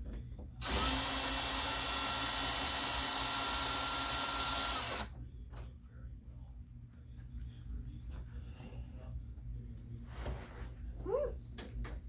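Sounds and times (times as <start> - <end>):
power drill running: 0.6 - 5.1.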